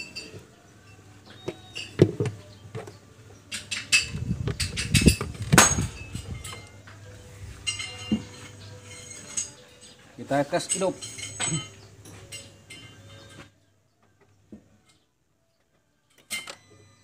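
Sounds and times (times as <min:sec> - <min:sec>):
metal tools clinking and knocking: 0:00.0 - 0:02.2, 0:03.5 - 0:13.5, 0:16.0 - 0:16.9.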